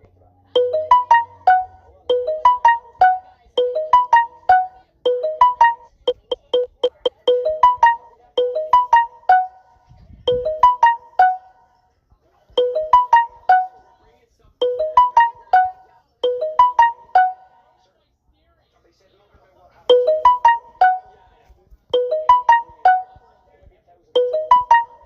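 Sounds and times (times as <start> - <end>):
plucked electronic keyboard melody: 0.6 - 11.8, 12.6 - 14.0, 14.6 - 17.7, 19.9 - 23.4, 24.2 - 25.0.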